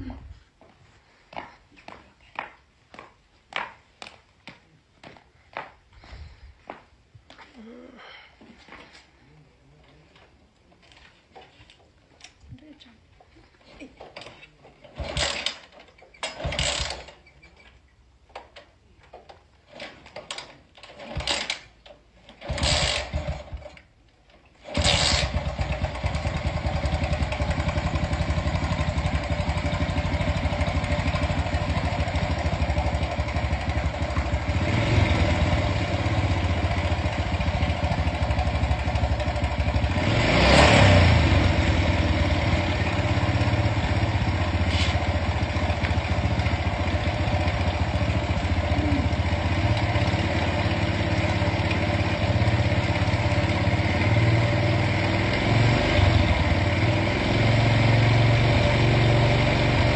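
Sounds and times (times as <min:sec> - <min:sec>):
motorcycle engine cranking: 0:14.0 - 0:56.9
motorcycle engine running: 0:24.7 - 0:59.9.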